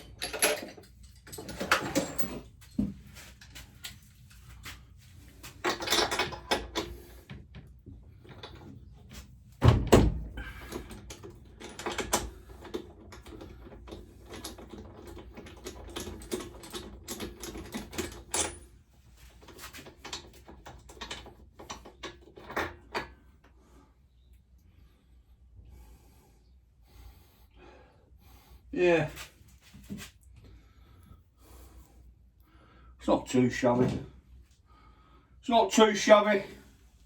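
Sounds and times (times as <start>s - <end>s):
tools and parts clicking and rattling: 0.0s - 23.6s.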